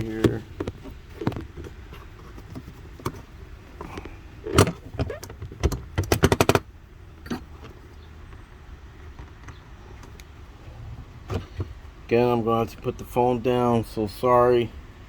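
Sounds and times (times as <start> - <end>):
hand tools knocking and clicking: 4.5 - 6.6.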